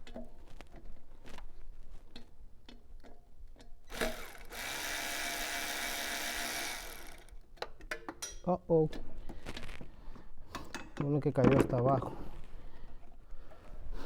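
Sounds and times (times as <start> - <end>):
tool clicks: 3.6 - 8.4
small power tool running: 3.9 - 7.3.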